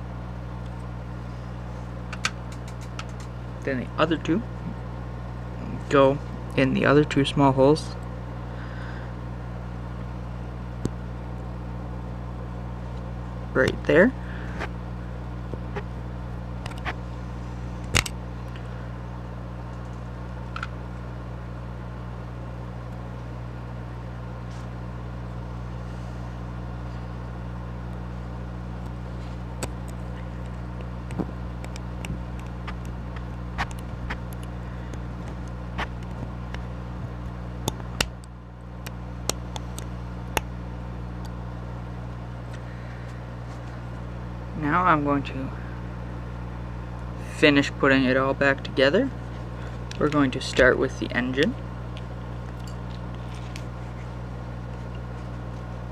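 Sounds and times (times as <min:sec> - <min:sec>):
steady low hum: 0:00.0 - 0:55.9
small clicks and taps of parts: 0:02.1 - 0:03.3.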